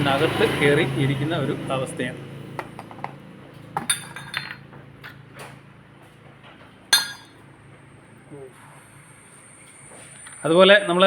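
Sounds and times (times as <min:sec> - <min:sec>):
metal parts clinking: 0:03.8 - 0:04.6, 0:07.0 - 0:07.3.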